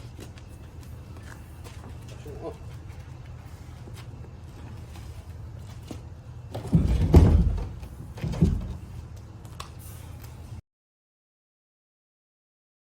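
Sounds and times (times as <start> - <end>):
heavy metallic thunks: 6.5 - 8.9.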